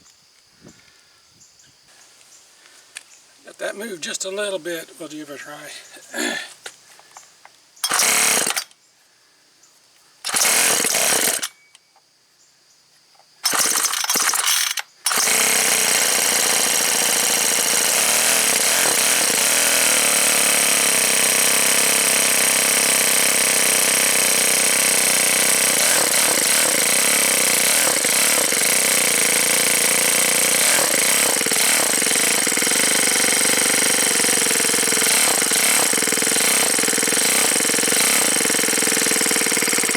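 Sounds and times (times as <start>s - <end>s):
string trimmer engine pull-starting: 7.8s - 8.8s, 10.2s - 11.8s, 13.4s - 39.9s.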